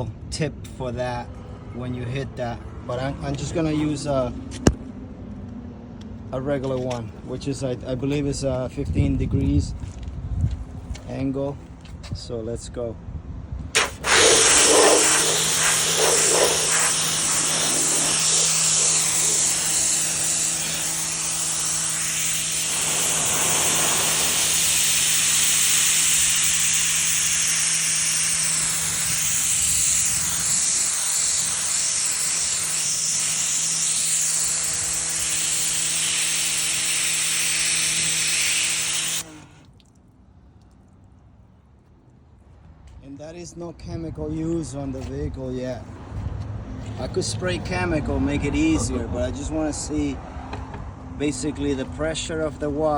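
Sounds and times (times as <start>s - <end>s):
pressure washer jet hissing: 13.8s - 39.6s
motor pump hum: 13.8s - 39.7s.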